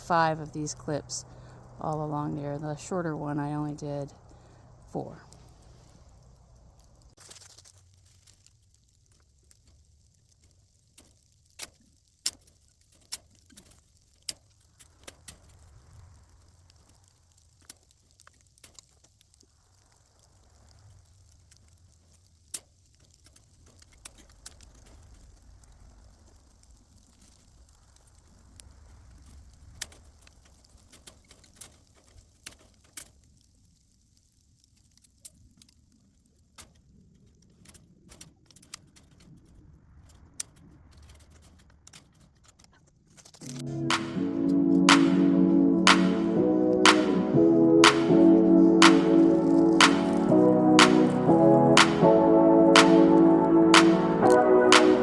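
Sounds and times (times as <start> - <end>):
faint low rumble: 0.0 - 7.2.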